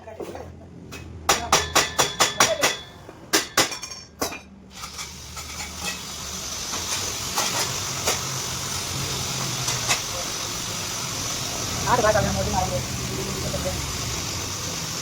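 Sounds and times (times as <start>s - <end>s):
hammer striking metal: 0.9s - 4.5s.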